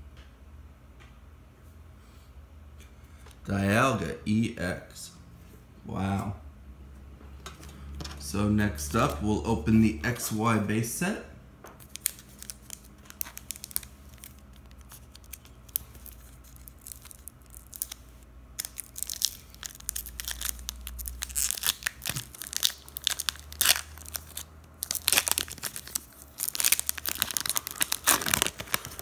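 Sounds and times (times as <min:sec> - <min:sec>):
foil wrapper crinkling and tearing: 0:11.8 - 0:29.0.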